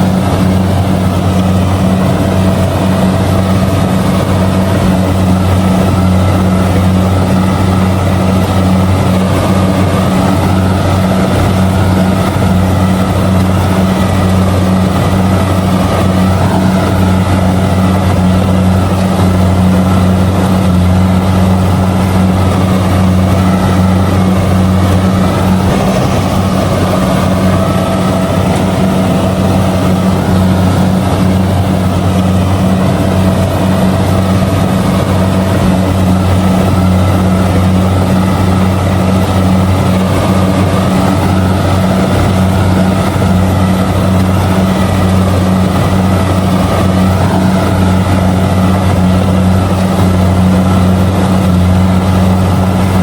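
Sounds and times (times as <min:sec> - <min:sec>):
diesel engine droning: 0:00.0 - 0:53.0
threshing machinery humming: 0:00.0 - 0:53.0.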